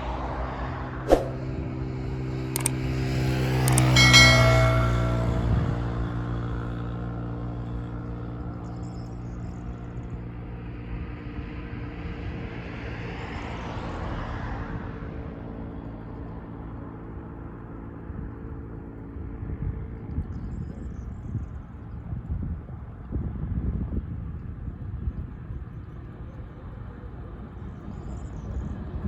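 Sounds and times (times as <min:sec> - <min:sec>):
motor vehicle passing by: 0:00.0 - 0:08.5.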